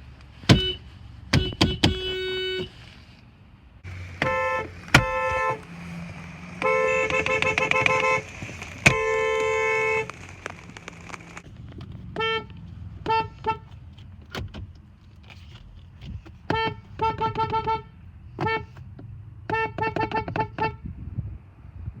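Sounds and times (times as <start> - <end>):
car horn short toots and beeps: 0.5 - 2.8, 4.1 - 5.7, 6.6 - 10.2, 16.5 - 18.8, 19.5 - 20.9
two-note car horn blasts: 4.1 - 5.7, 6.6 - 8.3.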